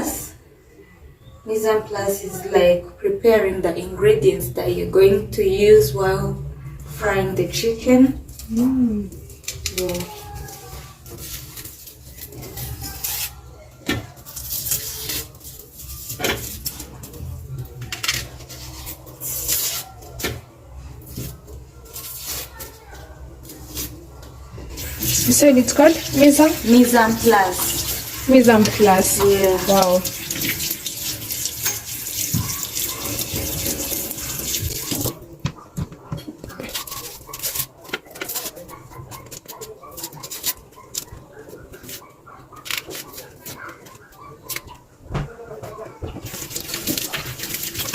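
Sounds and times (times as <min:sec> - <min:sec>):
dishes scraping and rubbing: 0:23.4 - 0:44.7, 0:46.1 - 0:47.9
water running from tap: 0:24.8 - 0:35.2, 0:46.3 - 0:47.9.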